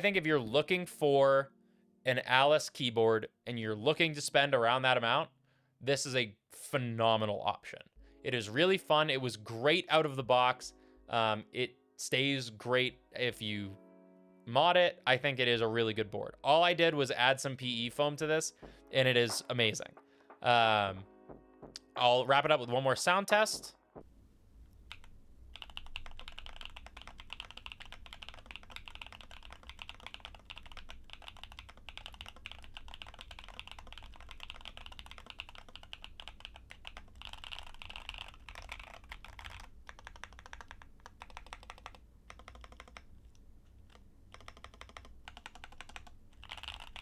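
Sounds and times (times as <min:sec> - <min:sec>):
mechanical keyboard typing: 0:24.5 - 0:47.0.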